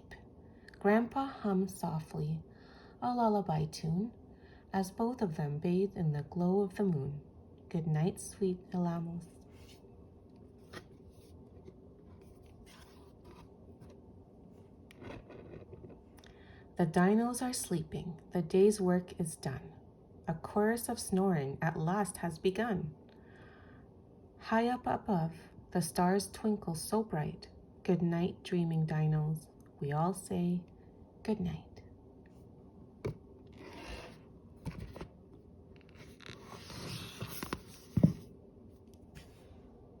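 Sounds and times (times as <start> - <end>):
paper pages rustling: 10.6 - 14.0, 33.5 - 35.2, 35.8 - 38.3.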